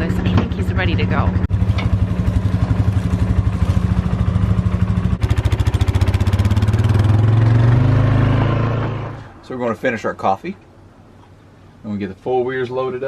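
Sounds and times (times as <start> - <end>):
atv engine idling: 0.0 - 7.2.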